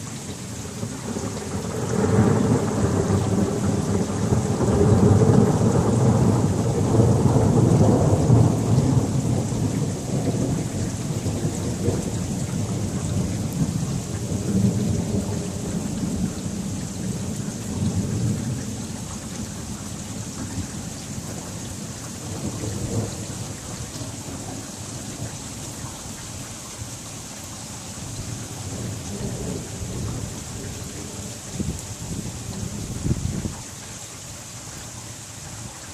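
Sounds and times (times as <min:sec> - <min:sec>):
steady rain: 0:00.0 - 0:35.9
thunder rumbling: 0:00.8 - 0:18.6.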